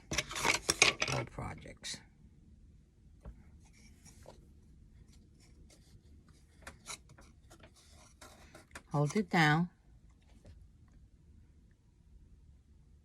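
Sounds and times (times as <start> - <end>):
hand rubbing and scratching: 3.5 - 9.2.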